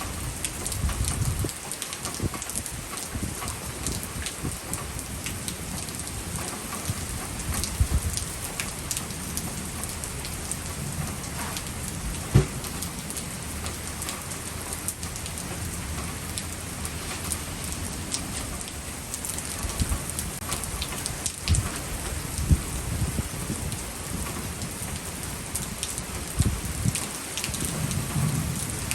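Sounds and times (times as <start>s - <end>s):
rain falling steadily: 0.0s - 28.9s
low knocks: 12.2s - 12.8s
loud thump: 12.3s - 12.8s.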